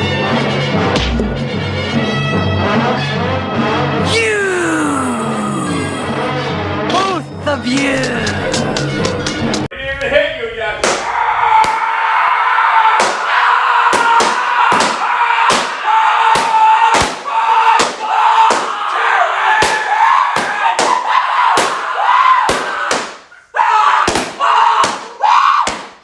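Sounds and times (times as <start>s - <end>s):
wavering cry: 17.4s - 25.6s
cartoon slams and whacks: 22.5s - 23.3s, 24.0s - 26.0s.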